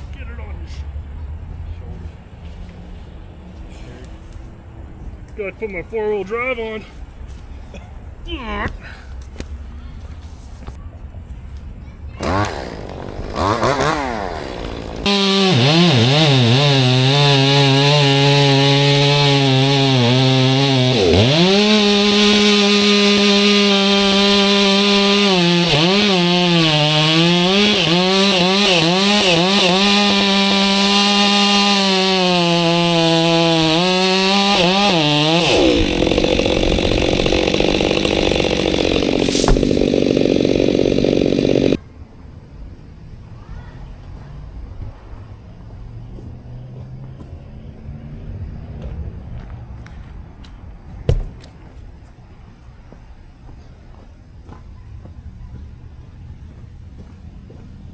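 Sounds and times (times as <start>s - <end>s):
chainsaw engine revving: 12.2s - 41.8s.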